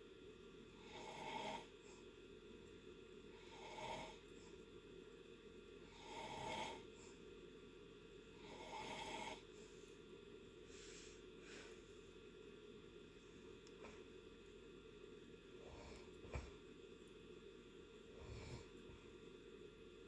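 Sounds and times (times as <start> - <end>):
person snoring: 0.8 - 1.7, 3.4 - 4.2, 5.9 - 6.9, 8.4 - 9.5.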